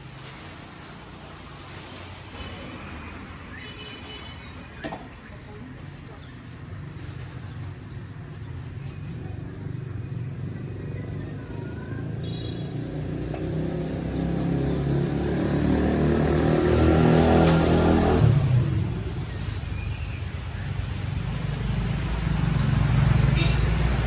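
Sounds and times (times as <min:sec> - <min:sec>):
vehicle engine running: 0:05.4 - 0:24.0.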